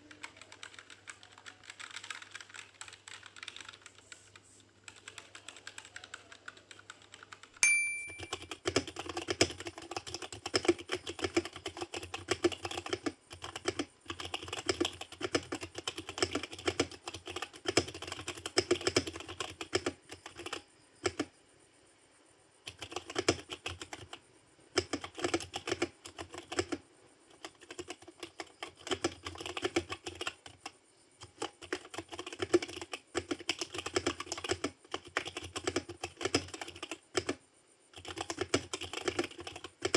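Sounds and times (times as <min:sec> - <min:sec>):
fast typing on keyboard: 0:00.0 - 0:21.3, 0:22.6 - 0:39.9
short ringing ping: 0:07.6 - 0:08.3.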